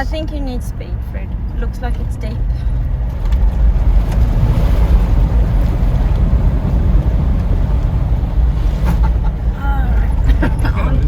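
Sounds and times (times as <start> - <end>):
diesel engine pulling hard: 0.0 - 11.0
water and mud splashing: 3.2 - 11.0.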